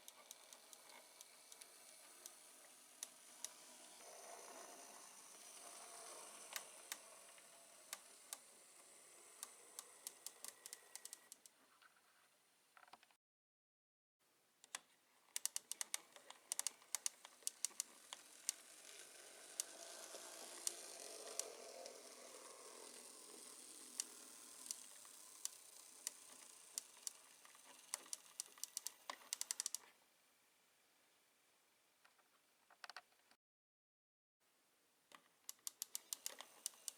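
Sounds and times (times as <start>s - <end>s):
model train motor whir: 0.0s - 11.5s, 15.4s - 29.8s, 35.5s - 36.9s.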